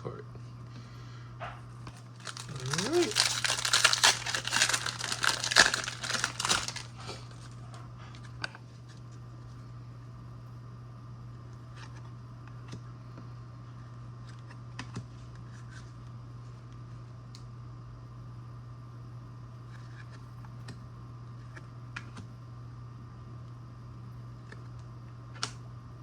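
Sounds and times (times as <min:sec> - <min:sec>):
wrapper crinkling and tearing: 0:01.9 - 0:07.5.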